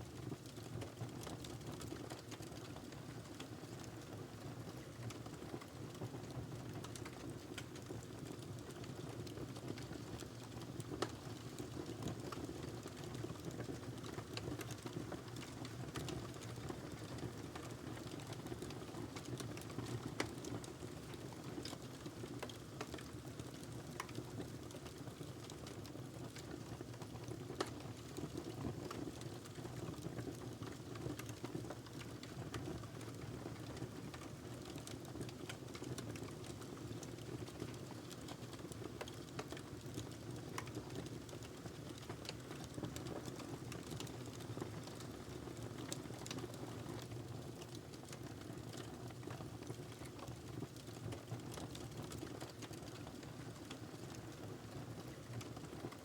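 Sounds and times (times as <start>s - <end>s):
wood fire crackling: 30.6s - 33.2s, 33.8s - 54.4s.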